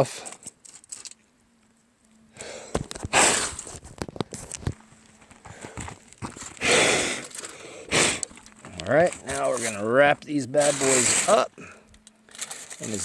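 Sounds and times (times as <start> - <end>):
footsteps scuffing: 2.8 - 6.6.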